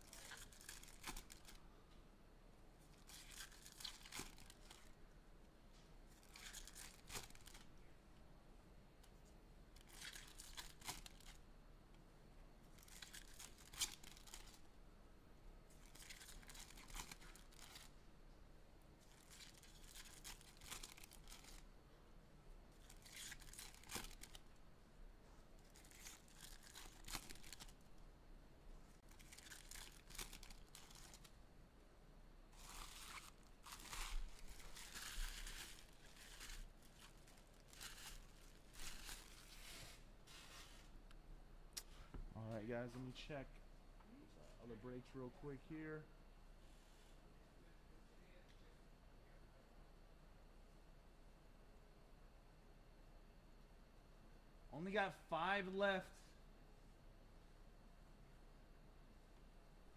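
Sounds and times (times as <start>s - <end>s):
foil wrappers tearing: 0.0s - 1.6s, 3.0s - 4.9s, 6.2s - 7.6s, 9.8s - 11.4s, 12.8s - 14.6s, 15.8s - 17.9s, 19.1s - 21.6s, 22.8s - 24.4s, 25.6s - 27.8s, 29.1s - 31.3s, 32.6s - 39.7s.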